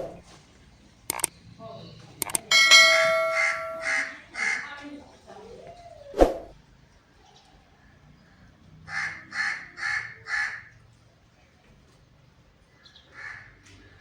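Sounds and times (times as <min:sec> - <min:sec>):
crow cawing: 0:08.9 - 0:10.6.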